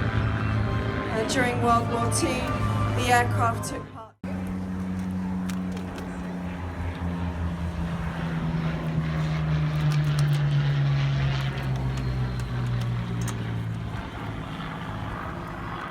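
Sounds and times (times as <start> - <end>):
propeller plane flying past: 0.0 - 15.9.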